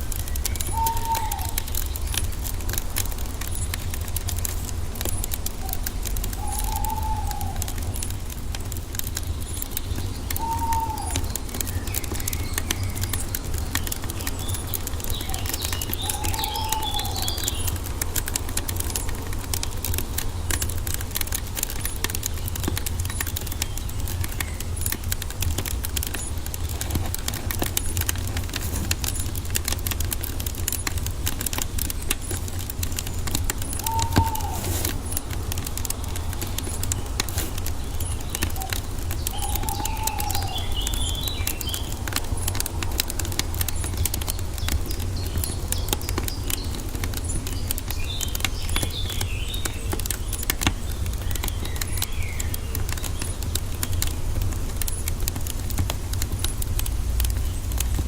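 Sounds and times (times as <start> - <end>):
bird calling: 0.0 - 3.8, 4.5 - 20.7, 33.0 - 53.4
wood fire crackling and popping: 0.0 - 58.0.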